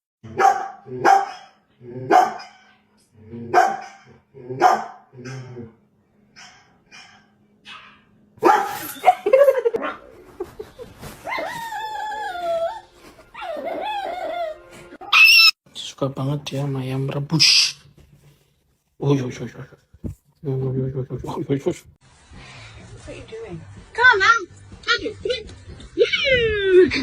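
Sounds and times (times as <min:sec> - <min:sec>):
dog barking: 0:00.3 - 0:02.8, 0:03.5 - 0:05.5, 0:06.4 - 0:09.2.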